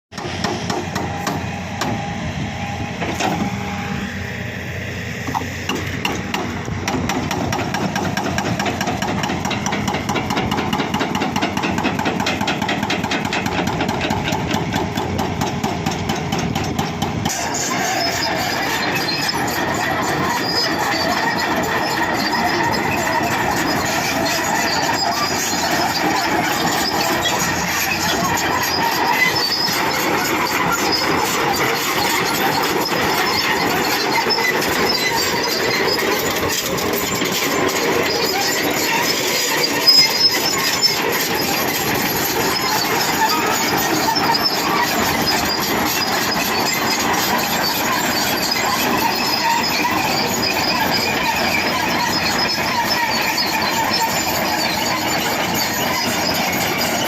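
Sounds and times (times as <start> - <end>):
excavator tracks squealing and grinding: 0.2 - 57.0.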